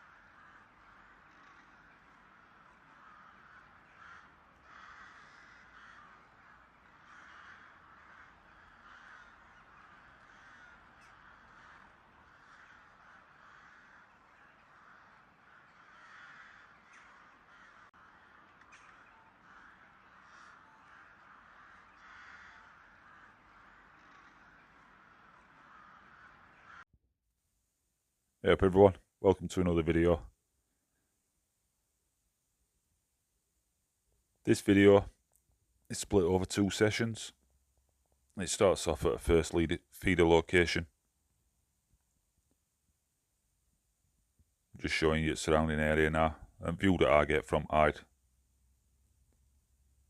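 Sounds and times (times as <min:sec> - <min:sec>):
crows cawing: 0:00.0 - 0:26.9.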